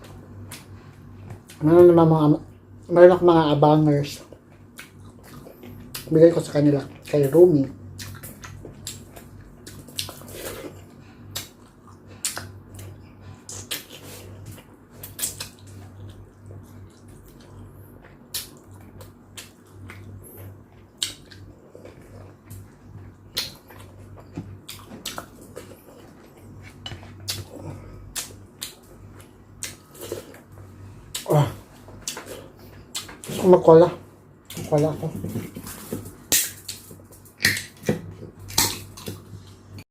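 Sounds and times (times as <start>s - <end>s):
low steady hum: 0.0s - 39.9s
wet chewing mouth sounds: 4.3s - 6.1s, 8.0s - 33.5s.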